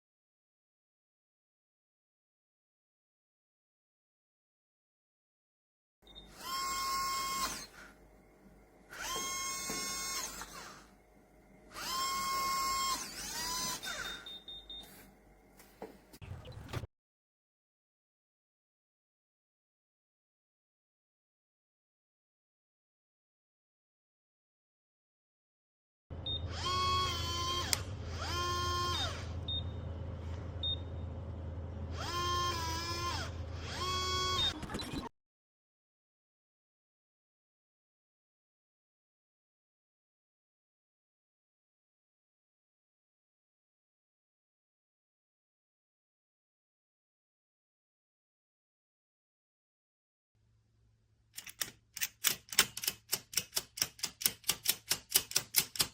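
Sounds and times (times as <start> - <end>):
small electric motor whirring: 6.3 - 7.9, 8.9 - 10.9, 11.7 - 14.2, 26.5 - 29.3, 31.9 - 34.8.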